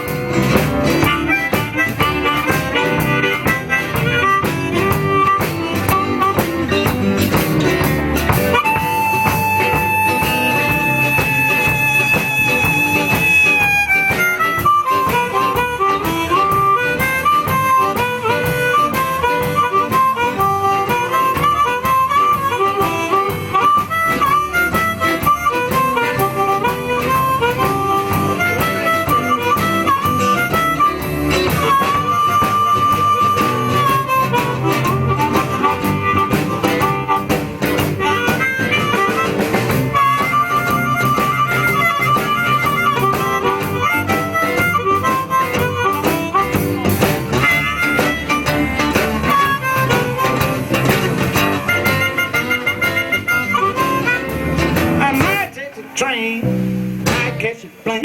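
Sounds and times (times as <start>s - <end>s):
harmonica solo: 0.0s - 55.4s
blues band playing: 0.0s - 58.0s.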